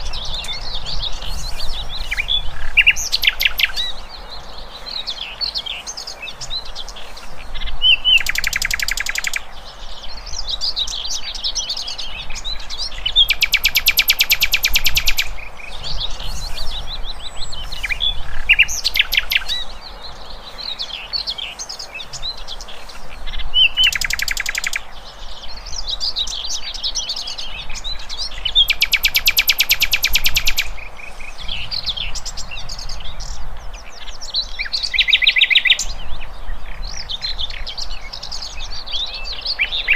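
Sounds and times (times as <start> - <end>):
songbirds chirping: 0.0 - 39.9
buzzy bird trills: 13.1 - 19.8, 28.5 - 30.7.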